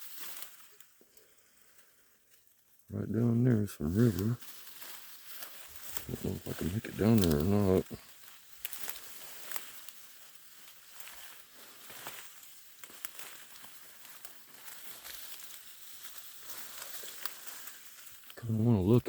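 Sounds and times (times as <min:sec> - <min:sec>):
footsteps crunching through dry leaves: 0:00.0 - 0:19.0
twigs crackling: 0:00.0 - 0:19.0
faint hiss: 0:02.9 - 0:12.2.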